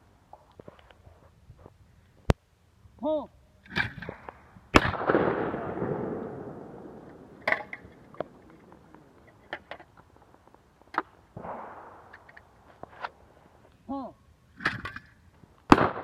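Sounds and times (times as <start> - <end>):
shotgun blast echoing: 4.7 - 8.4, 11.4 - 12.2, 15.7 - 16.0.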